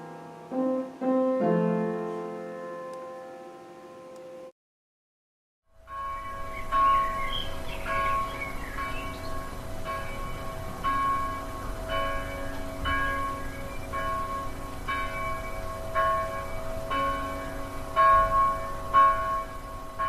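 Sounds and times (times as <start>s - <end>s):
bell tolling: 5.8s - 20.0s.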